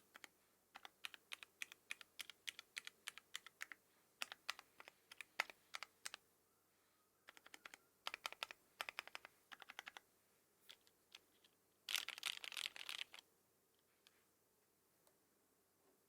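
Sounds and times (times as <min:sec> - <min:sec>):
mechanical keyboard typing: 0:00.1 - 0:06.2, 0:07.3 - 0:10.0, 0:11.9 - 0:13.2.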